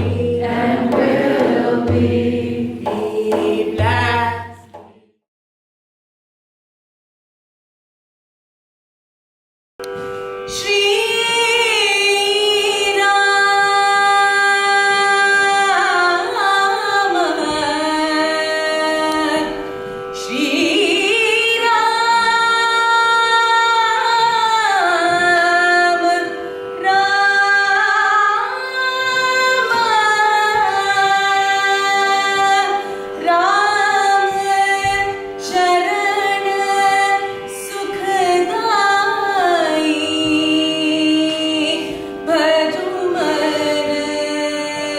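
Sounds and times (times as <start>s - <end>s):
slow devotional singing: 0.0s - 5.2s.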